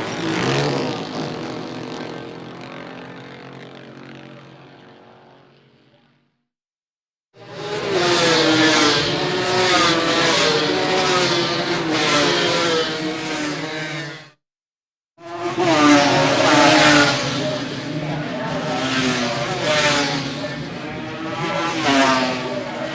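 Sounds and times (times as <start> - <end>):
motorcycle engine revving: 0.0 - 5.3, 15.3 - 22.9.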